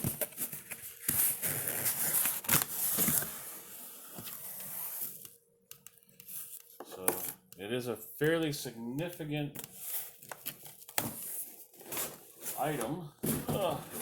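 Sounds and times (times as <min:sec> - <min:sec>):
packing tape torn on cardboard box: 0:00.0 - 0:03.3.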